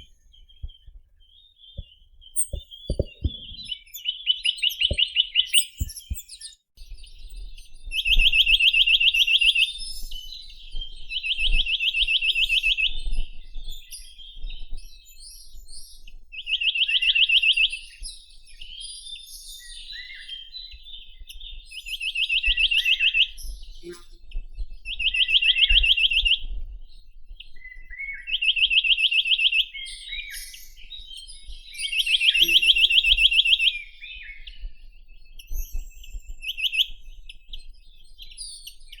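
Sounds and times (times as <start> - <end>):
bird trilling: 32.2 - 33.2.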